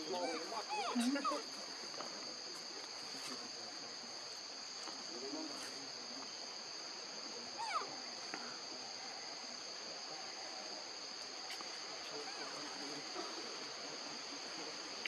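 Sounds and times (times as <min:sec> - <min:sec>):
insects droning: 0:00.0 - 0:15.0.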